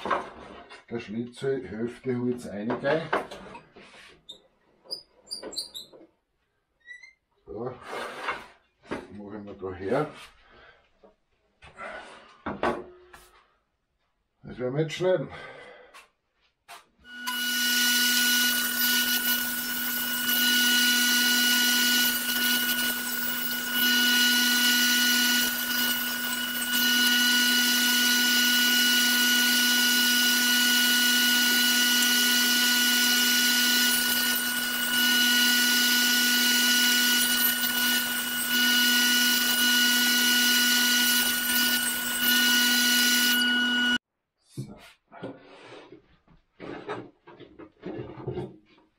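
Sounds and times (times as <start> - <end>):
table saw cutting wood: 17.1 - 44.0.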